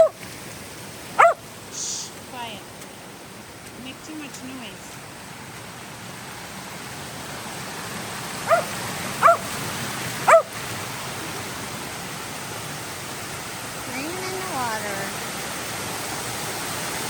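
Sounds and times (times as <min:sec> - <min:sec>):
creek water and waterfall rushing: 0:00.0 - 0:17.0
dog barking: 0:01.2 - 0:01.4, 0:08.4 - 0:09.5, 0:10.2 - 0:10.5.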